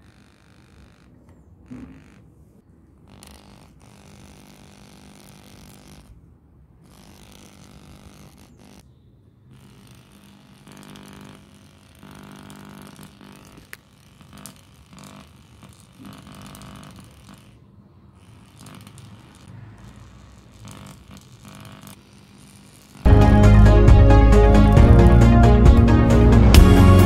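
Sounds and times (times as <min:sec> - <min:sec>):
loud electronic music: 0:23.1 - 0:27.0.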